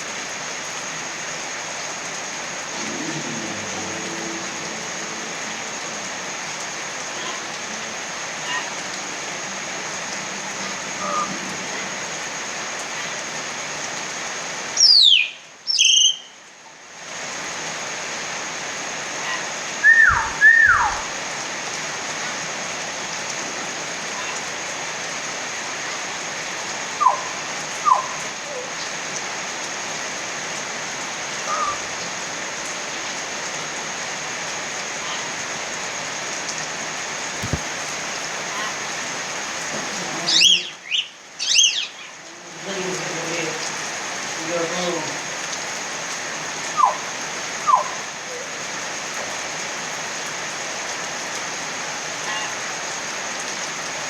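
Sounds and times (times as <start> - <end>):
steady rain: 0.0 - 54.0
bird whistled calls: 14.8 - 16.3, 19.8 - 21.2, 27.0 - 28.2, 40.3 - 42.1.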